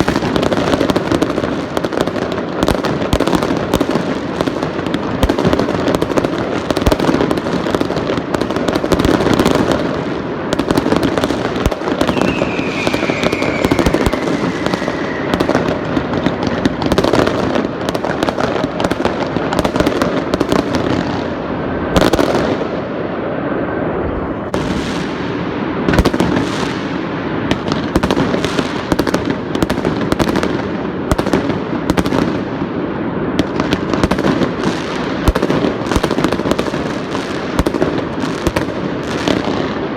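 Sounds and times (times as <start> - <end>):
fireworks bangs and crackling: 0.0 - 39.9
descending whistle: 12.0 - 15.9.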